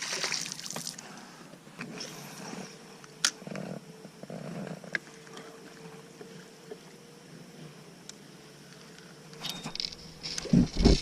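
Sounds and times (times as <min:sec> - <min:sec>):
electric motor humming: 0:02.3 - 0:11.0.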